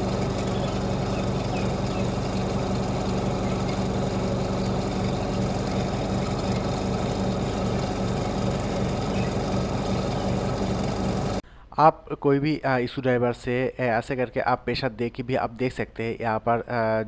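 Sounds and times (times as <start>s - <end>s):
spin-dryer motor humming: 0.0s - 11.4s.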